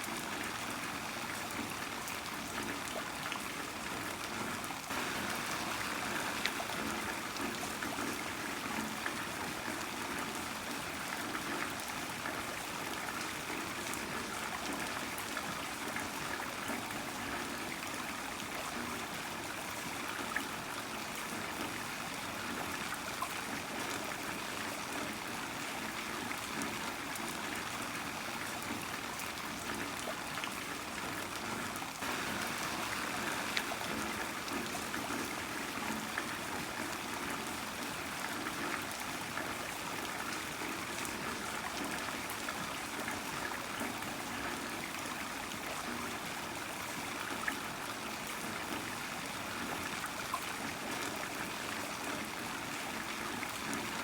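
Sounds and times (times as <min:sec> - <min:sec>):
heavy rain falling: 0:04.9 - 0:08.7, 0:32.0 - 0:36.7.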